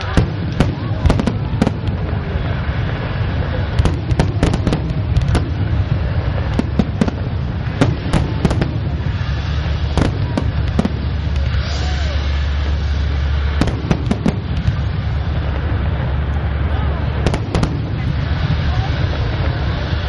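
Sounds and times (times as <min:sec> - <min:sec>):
distant booms rumbling: 0:00.0 - 0:20.0
fireworks bangs and cracks: 0:00.0 - 0:20.0.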